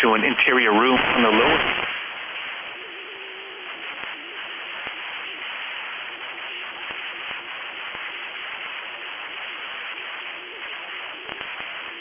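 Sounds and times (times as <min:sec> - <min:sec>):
static hiss: 0:00.0 - 0:12.0
faint clicks: 0:11.3 - 0:11.6.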